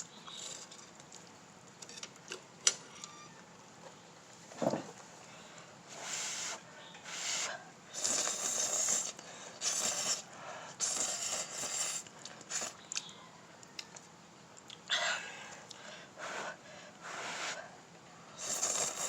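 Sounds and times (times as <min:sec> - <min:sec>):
slurping noodles: 0:07.9 - 0:12.8, 0:18.4 - 0:19.0.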